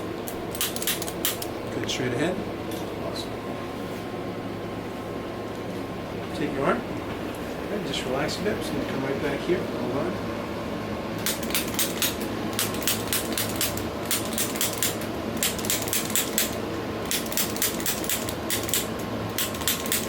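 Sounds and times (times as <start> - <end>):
sharp light clicks: 0.3 - 1.5, 11.2 - 20.0.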